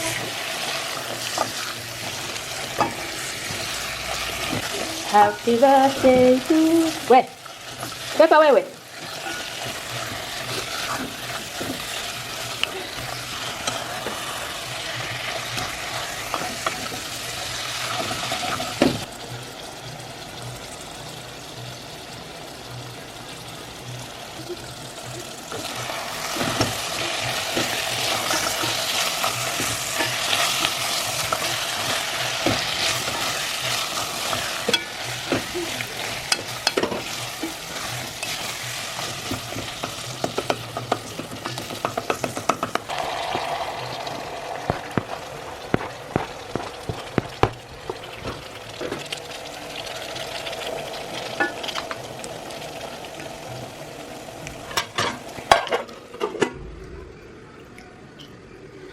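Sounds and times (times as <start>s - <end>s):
minced meat sizzling in a pot: 0.0s - 56.5s.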